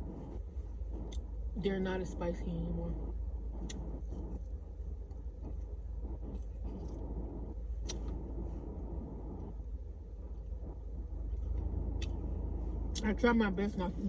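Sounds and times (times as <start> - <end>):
low rumble inside car: 0.0 - 14.0.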